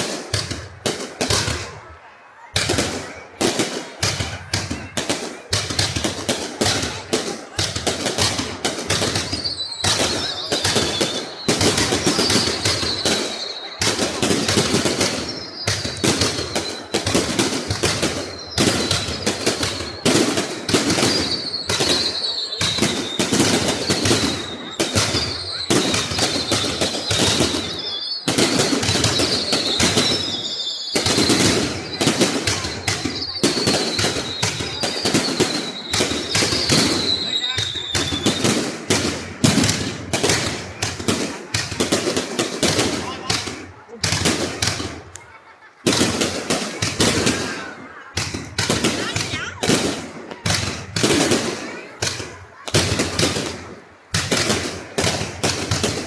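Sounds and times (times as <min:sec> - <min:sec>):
firework bangs and crackles: 0:00.0 - 0:56.0
high falling firework whistles: 0:09.0 - 0:38.6.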